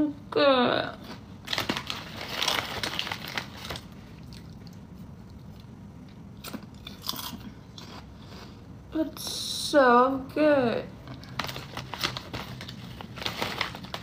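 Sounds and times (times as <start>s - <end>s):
person chewing crunchy chips: 1.5s - 5.7s, 6.4s - 8.6s.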